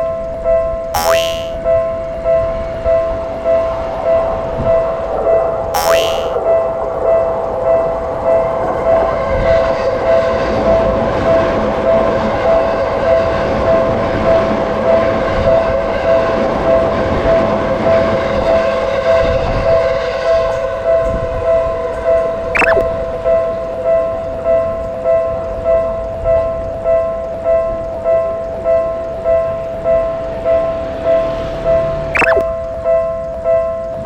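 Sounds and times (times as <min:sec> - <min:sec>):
falling whistle-like tone: 0:22.6 - 0:22.9, 0:32.2 - 0:32.4.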